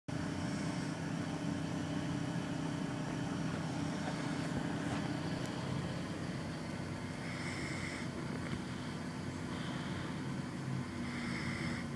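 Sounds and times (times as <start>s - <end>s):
man snoring: 7.2s - 8.1s, 11.0s - 11.9s.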